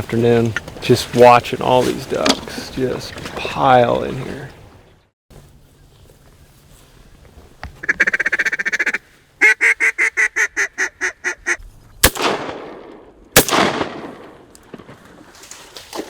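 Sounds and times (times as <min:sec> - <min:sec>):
duck call chatter: 0:07.8 - 0:11.6
duck call quacks: 0:07.8 - 0:11.6
shotgun shots echoing: 0:12.0 - 0:14.9.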